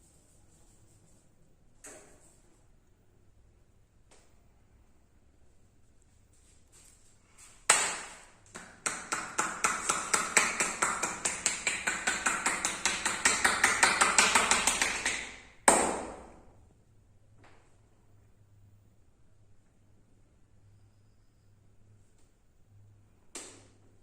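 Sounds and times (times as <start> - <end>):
hands slapping body rapidly: 7.7 - 16.4
loud sharp slap: 7.7 - 16.4.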